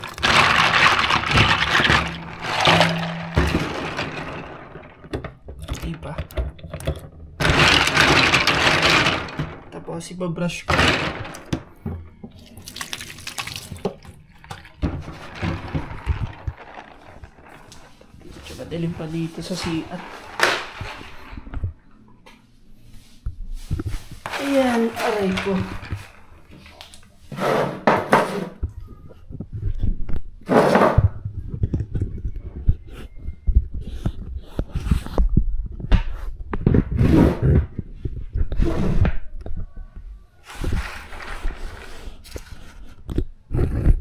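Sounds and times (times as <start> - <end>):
water splashing in a basin: 12.4 - 14.8.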